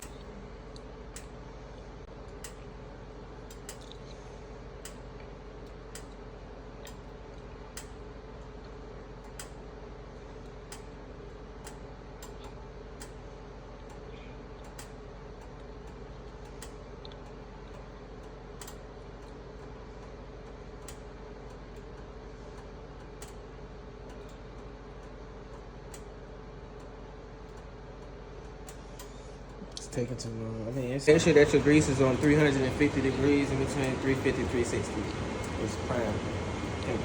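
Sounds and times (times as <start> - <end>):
steady hum: 0.0 - 37.0
grease heating in a pot: 31.1 - 37.0.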